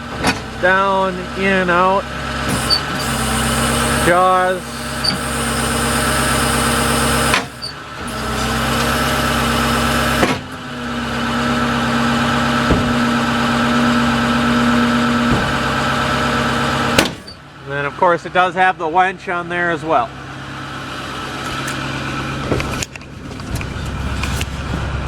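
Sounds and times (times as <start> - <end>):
hydraulic pump running: 0.0 - 18.1, 20.1 - 25.0
steady hydraulic whine: 0.0 - 18.1.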